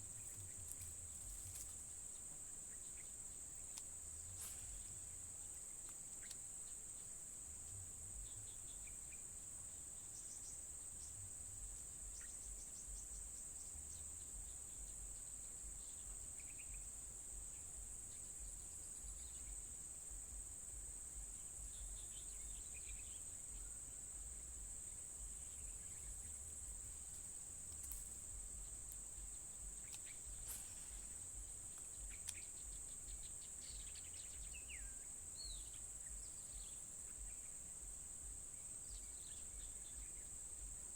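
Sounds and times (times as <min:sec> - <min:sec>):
insect chorus drone: 0:00.0 - 0:40.9
faint clicks: 0:05.8 - 0:06.4, 0:26.2 - 0:32.6.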